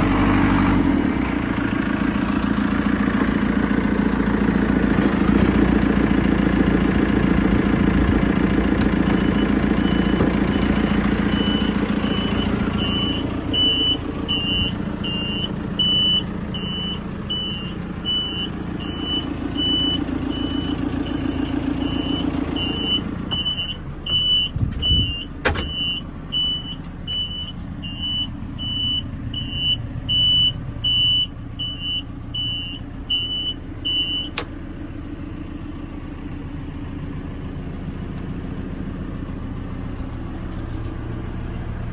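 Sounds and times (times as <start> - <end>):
diesel engine running: 0.0 - 41.9
reversing alarm beeping: 8.8 - 34.5.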